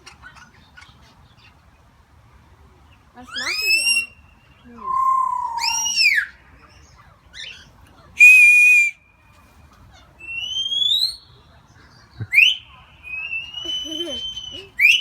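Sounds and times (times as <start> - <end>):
parrot whistling: 4.8 - 6.3, 13.1 - 15.0
girl whistling: 4.9 - 6.0, 8.2 - 8.9, 13.4 - 15.0.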